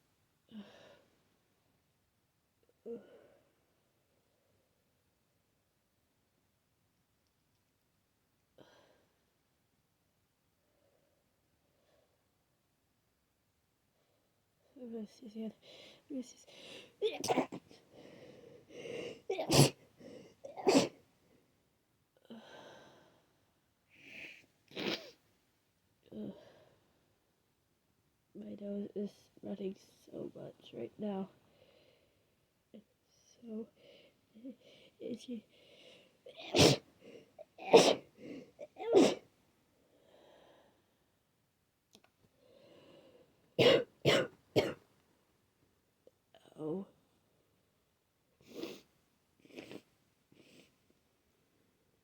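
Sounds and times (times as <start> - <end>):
person breathing: 15.6 - 17.0, 17.9 - 19.3, 19.9 - 20.5, 31.5 - 32.3, 33.8 - 36.2, 38.1 - 38.6, 39.8 - 41.0, 42.4 - 43.4
faint hitching breaths: 15.6 - 21.5, 33.7 - 38.8
person sneezing: 17.0 - 17.7, 19.3 - 19.8, 20.5 - 21.0, 24.7 - 25.2, 36.4 - 39.2.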